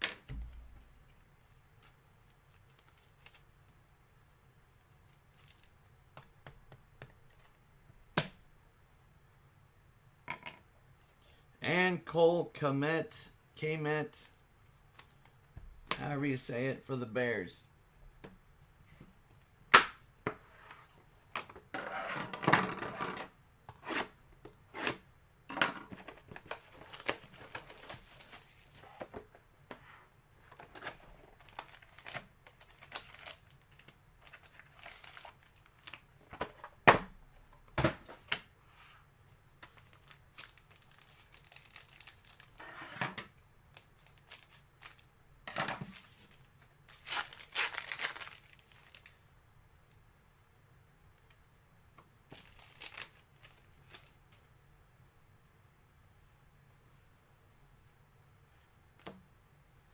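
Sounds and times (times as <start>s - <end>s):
foil wrappers tearing and crinkling: 26.1s - 28.6s, 31.4s - 36.0s, 39.8s - 42.6s, 43.8s - 45.1s, 45.9s - 49.2s, 52.3s - 54.1s.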